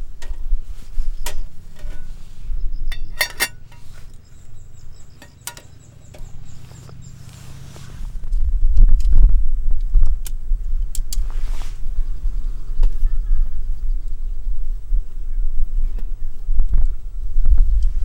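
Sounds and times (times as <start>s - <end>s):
metal cookware clinking: 1.2s - 4.2s, 5.0s - 6.5s.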